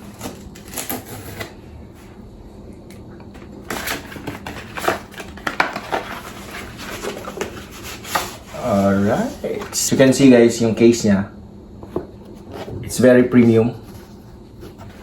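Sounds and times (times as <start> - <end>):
packaging sharp clicks and scrapes: 0.0 - 1.6, 3.7 - 8.6.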